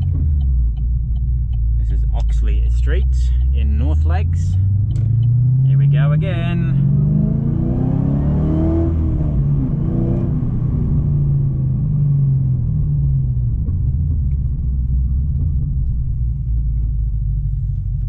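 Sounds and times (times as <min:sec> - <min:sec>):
car engine accelerating: 0:00.0 - 0:18.0.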